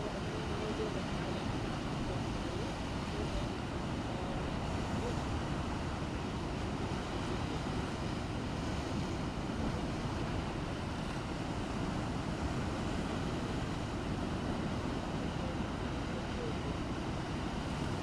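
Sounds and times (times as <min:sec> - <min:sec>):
rough sea waves: 0:00.0 - 0:18.0.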